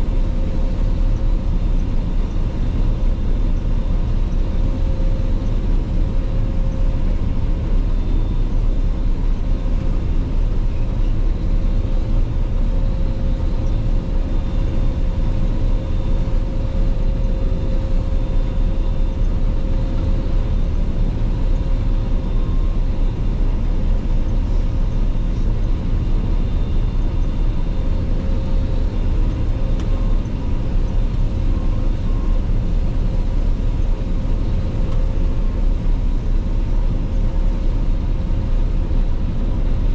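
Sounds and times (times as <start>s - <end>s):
faint steady whine: 0.0s - 39.9s.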